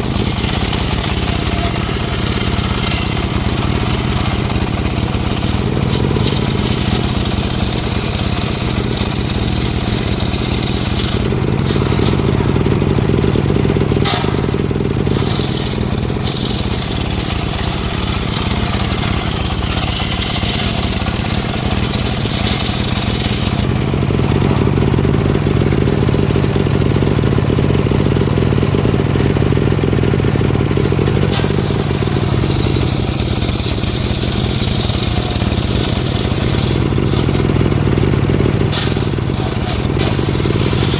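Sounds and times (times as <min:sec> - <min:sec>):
engine-driven wood saw sawing logs: 0:00.0 - 0:40.9.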